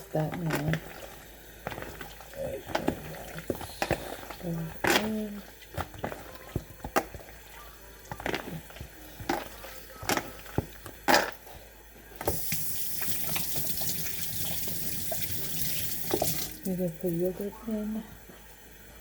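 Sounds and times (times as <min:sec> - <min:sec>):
kitchen tap running: 0:00.0 - 0:11.4, 0:12.2 - 0:17.5
wet squelches of mixing chicken: 0:00.0 - 0:12.3.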